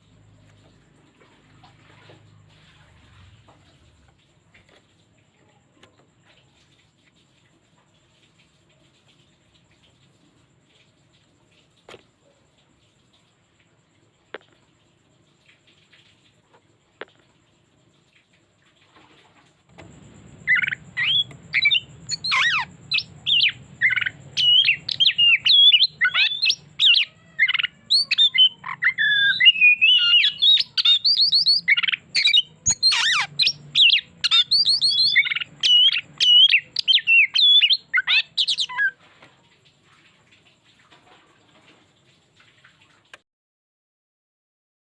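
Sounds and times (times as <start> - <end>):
faint low hum: 0.0 - 41.9
songbird singing: 19.7 - 39.0.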